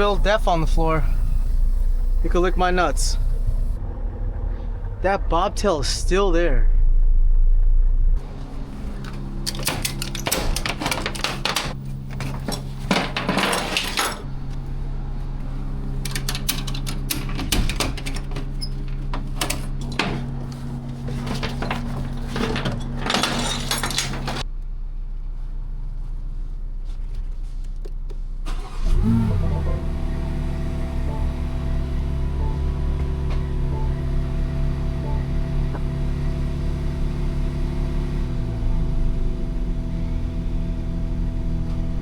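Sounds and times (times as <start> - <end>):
vehicle engine running: 0.0 - 13.2, 14.2 - 17.4, 28.6 - 42.0.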